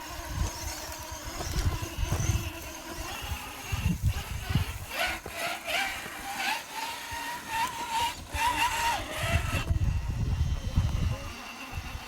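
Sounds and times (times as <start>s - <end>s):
electric motor and gears whining: 0.0s - 12.0s.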